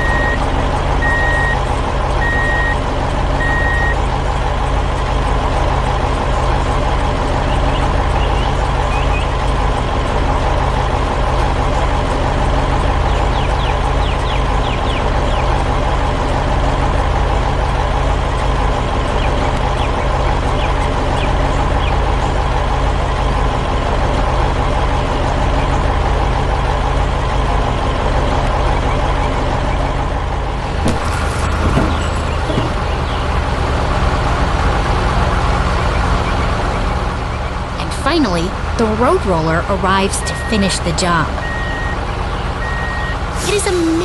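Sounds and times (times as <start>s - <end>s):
diesel truck engine running: 0.0s - 44.0s.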